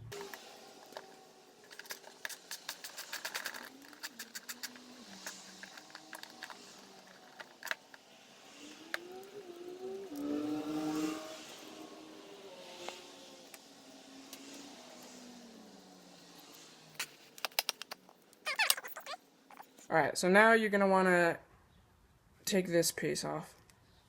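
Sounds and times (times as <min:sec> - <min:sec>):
metal clicks and rattles: 0:01.6 - 0:07.9
vehicle engine revving: 0:08.3 - 0:15.9.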